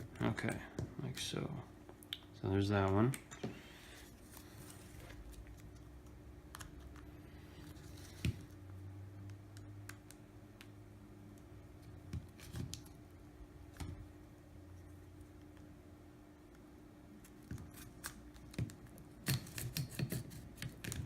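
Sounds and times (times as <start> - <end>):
faint steady hum: 0.0 - 21.0.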